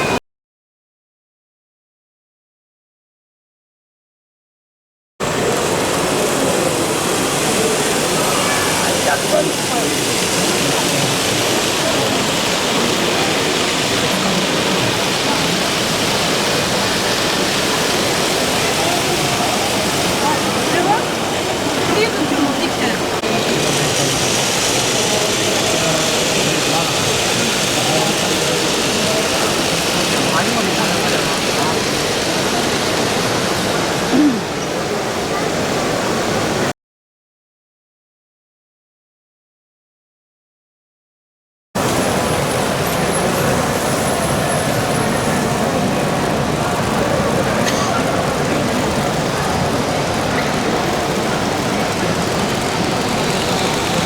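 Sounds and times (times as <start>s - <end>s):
crowd hubbub in a hall: 0.0s - 0.2s, 5.2s - 36.7s, 41.8s - 54.0s.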